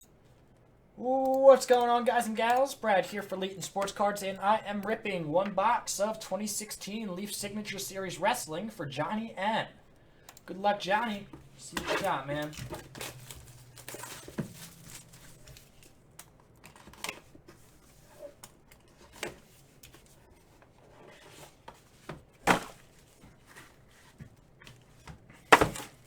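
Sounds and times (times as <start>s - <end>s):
packaging tearing and crinkling: 12.4s - 17.2s.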